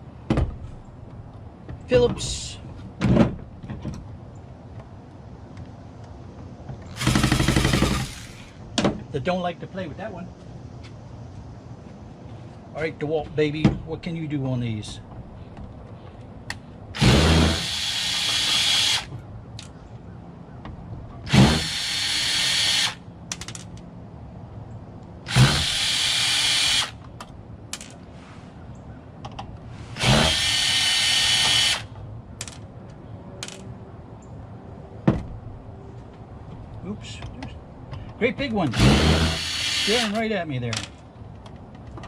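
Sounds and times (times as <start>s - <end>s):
cordless drill whirring: 17.0s - 19.1s, 21.3s - 23.0s, 25.3s - 27.0s, 30.0s - 31.9s, 38.7s - 40.2s.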